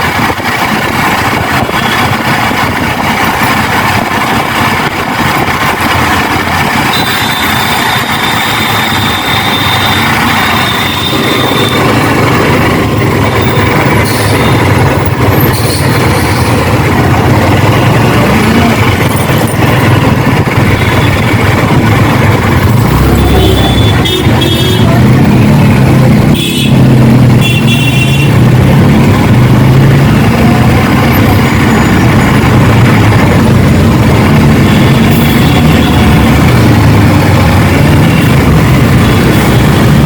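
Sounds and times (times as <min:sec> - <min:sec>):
motorcycle engine drone: 0:00.0 - 0:40.0
road and wind noise: 0:00.0 - 0:40.0
car horn toots: 0:06.8 - 0:12.1, 0:22.6 - 0:25.0, 0:26.3 - 0:28.4.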